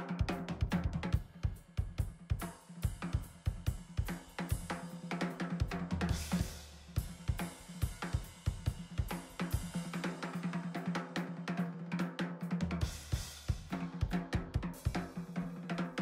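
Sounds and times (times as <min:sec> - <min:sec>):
drum kit playing: 0:00.0 - 0:10.5, 0:12.4 - 0:16.0.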